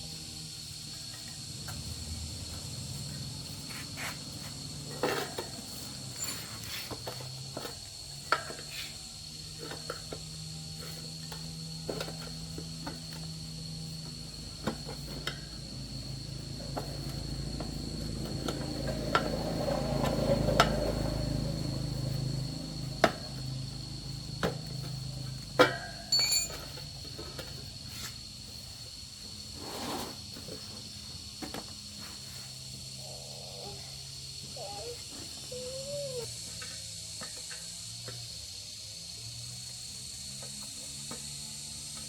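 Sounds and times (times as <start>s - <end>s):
metallic clinks of hand tools: 25.6s - 26.8s
sharp knock with metallic ring: 25.7s - 26.5s.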